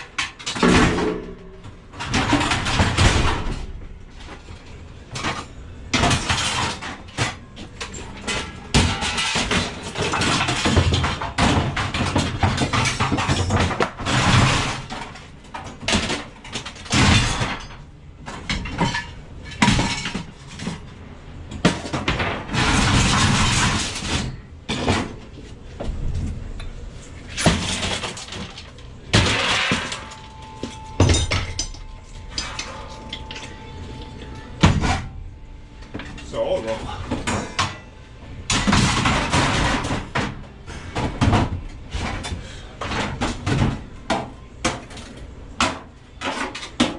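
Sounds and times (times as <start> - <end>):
crashes and clatters: 0.0 - 21.0, 21.6 - 33.6, 38.5 - 43.9.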